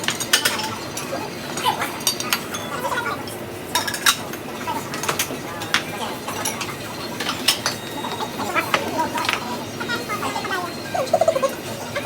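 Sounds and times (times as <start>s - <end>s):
utensils clinking on tableware: 0.0s - 10.5s
steady background hum: 0.0s - 12.0s.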